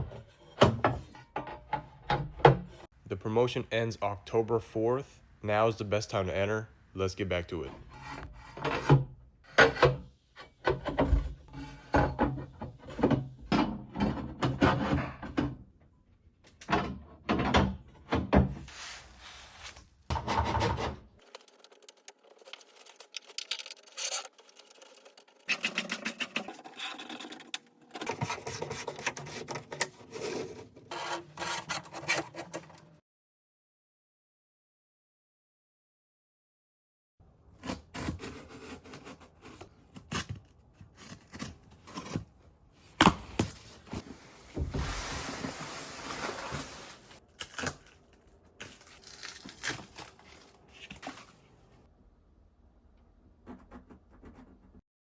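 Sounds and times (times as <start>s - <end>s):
scraping and rubbing: 18.6s - 33.0s, 38.0s - 47.3s.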